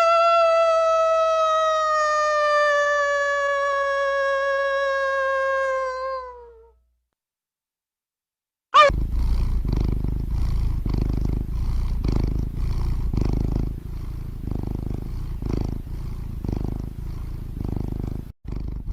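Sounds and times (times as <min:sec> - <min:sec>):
cat purring: 0:08.8 - 0:18.9.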